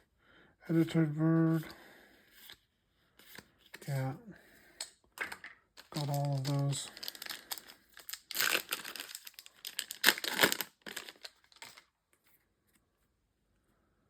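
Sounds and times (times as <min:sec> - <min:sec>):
foil wrapper tearing and crinkling: 0:05.8 - 0:11.9.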